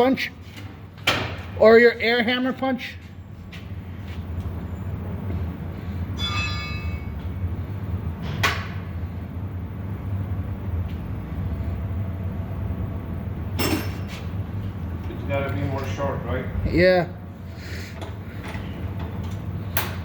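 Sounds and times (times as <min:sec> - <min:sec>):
low mechanical hum: 0:00.0 - 0:20.0
metallic ring: 0:06.1 - 0:07.4, 0:13.6 - 0:14.3.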